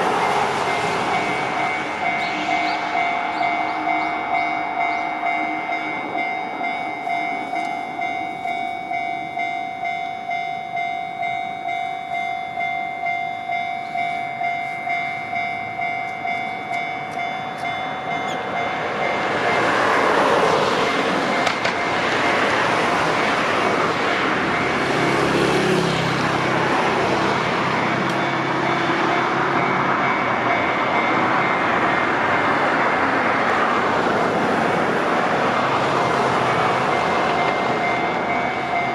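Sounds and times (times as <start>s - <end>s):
electric train passing: 0.0s - 38.9s
level-crossing warning bell: 0.0s - 38.9s.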